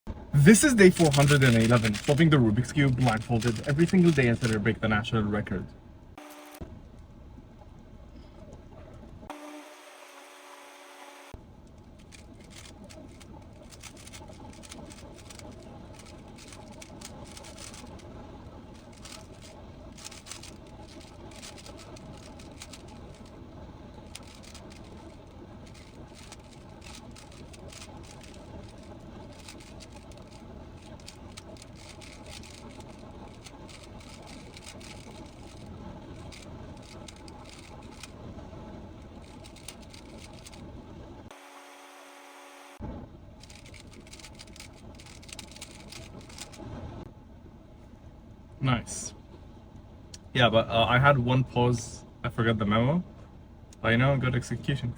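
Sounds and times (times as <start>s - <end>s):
steady background hum: 0.1s - 54.9s
plastic puzzle cube clicking: 0.9s - 2.2s, 2.9s - 4.6s, 12.0s - 18.0s, 18.8s - 23.3s, 24.1s - 35.6s, 36.2s - 38.1s, 39.2s - 40.6s, 43.4s - 46.6s.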